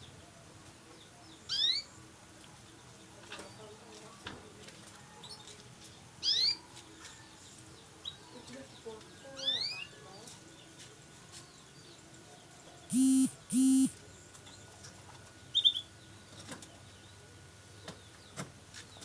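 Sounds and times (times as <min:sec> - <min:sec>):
cage birds chirping: 0:00.0 - 0:04.2, 0:04.8 - 0:14.8, 0:15.5 - 0:19.0
loud flat honks: 0:12.9 - 0:13.9.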